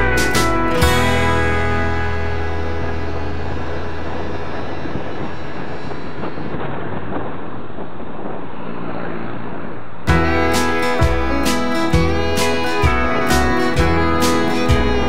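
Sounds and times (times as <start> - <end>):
acoustic guitar country song: 0.0 - 6.5, 10.1 - 15.0
steady low rumble: 0.0 - 15.0
wind-like hissing noise: 1.9 - 15.0.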